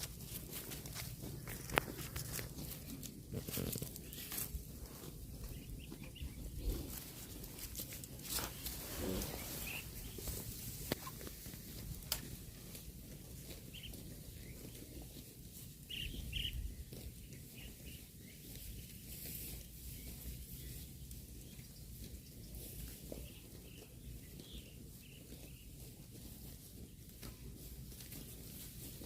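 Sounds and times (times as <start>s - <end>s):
cattle tearing and chewing grass: 0.0s - 29.0s
bird chirps: 8.4s - 10.4s, 15.9s - 16.7s.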